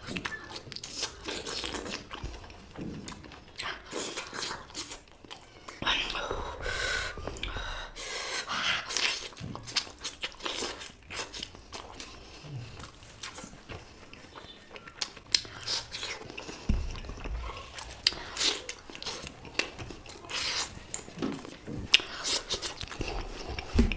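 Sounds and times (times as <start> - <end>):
chewing and mouth smacks: 0.0 - 5.8, 8.8 - 23.9.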